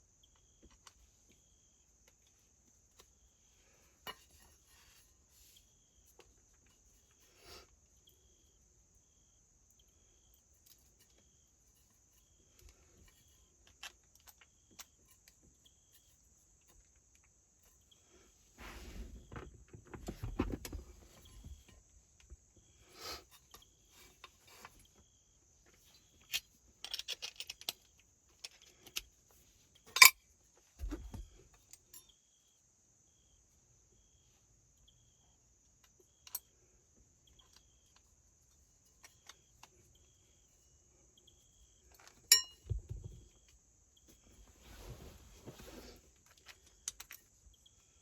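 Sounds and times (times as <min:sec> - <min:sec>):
crickets chirring: 0:00.0 - 0:48.0
metallic clicks of hand tools: 0:26.2 - 0:29.1, 0:29.8 - 0:30.2, 0:42.0 - 0:42.6.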